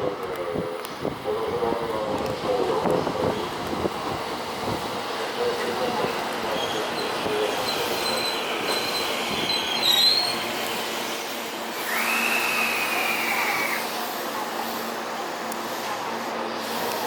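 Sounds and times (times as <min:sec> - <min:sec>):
train running noise: 0:00.0 - 0:17.0
train wheels squealing: 0:06.5 - 0:10.6.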